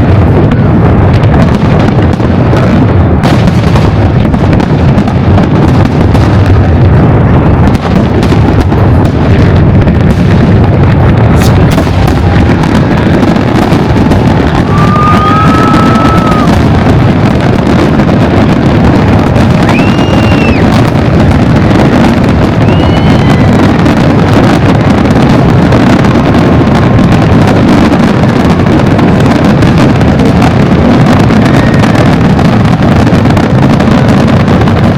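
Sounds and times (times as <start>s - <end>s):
fireworks booming and crackling: 0.0s - 34.9s
firework whistles: 11.3s - 24.6s.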